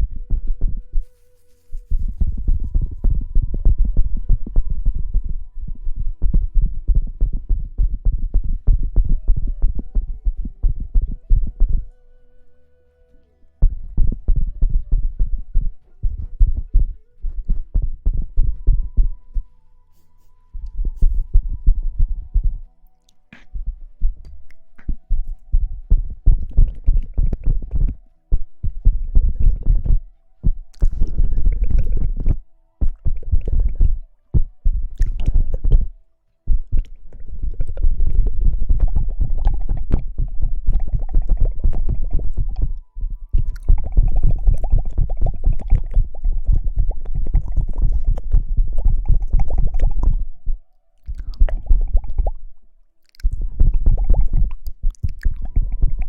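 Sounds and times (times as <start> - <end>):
close rubbing and scratching of hair: 1.0 - 3.2.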